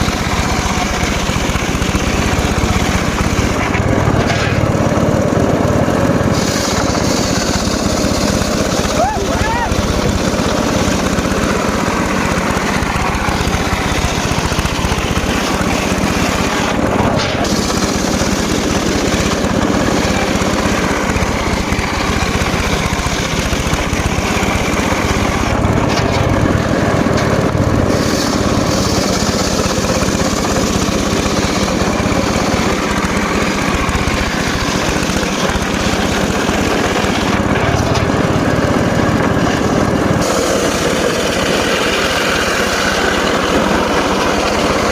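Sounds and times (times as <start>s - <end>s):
motor-driven circular saw cutting wood: 0.0s - 44.9s.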